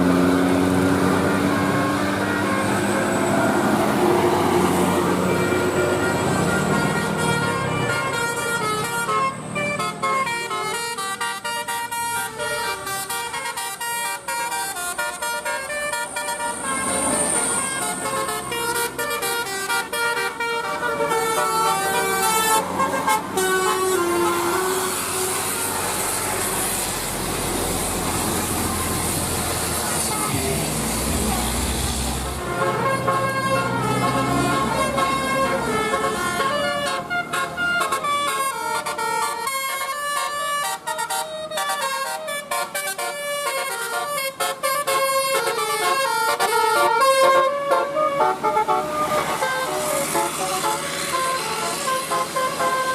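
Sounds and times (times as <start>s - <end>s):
large engine rumble: 0.0s - 41.5s
musical air horn tune: 1.0s - 52.9s.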